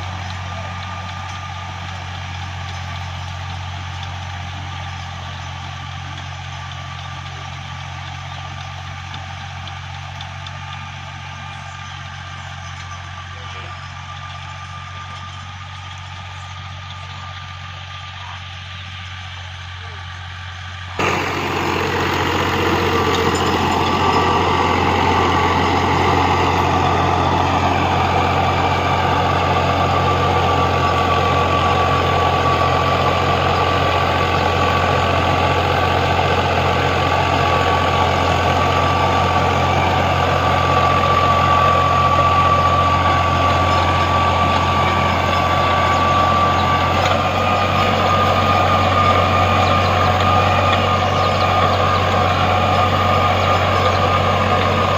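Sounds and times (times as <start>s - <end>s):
tractor engine running: 0.0s - 54.9s
high whine: 16.3s - 54.9s.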